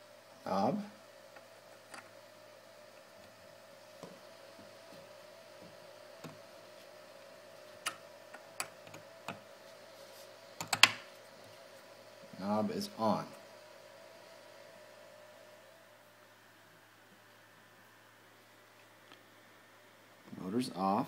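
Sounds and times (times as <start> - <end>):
steady faint hum: 0.0 - 21.0
faint clicks and taps: 4.0 - 6.4, 7.8 - 9.4.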